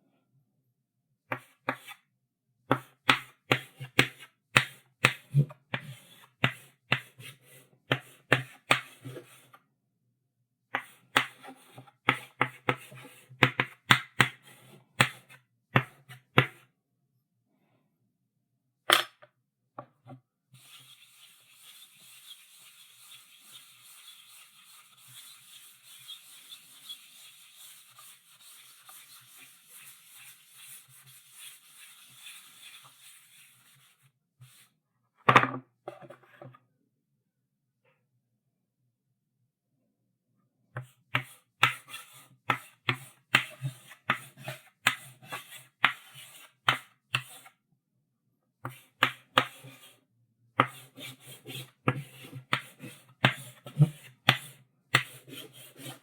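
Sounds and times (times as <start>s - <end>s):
chalk tapping on blackboard: 1.3s - 2.0s, 2.7s - 7.3s, 7.9s - 9.1s, 10.8s - 14.4s, 20.6s - 34.6s, 40.8s - 47.5s, 48.6s - 49.9s, 50.6s - 56.0s
chalk scratching along board: 20.6s - 34.7s, 41.1s - 47.6s, 48.6s - 50.0s, 50.6s - 56.0s.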